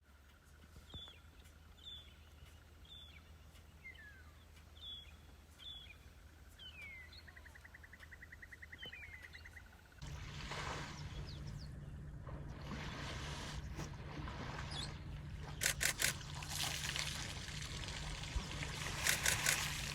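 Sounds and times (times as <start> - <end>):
low hum: 9.6 - 19.9
water rushing and splashing: 10.0 - 19.9
sliding bird calls: 13.0 - 19.9
rapid bird trill: 15.5 - 16.4, 18.6 - 19.9.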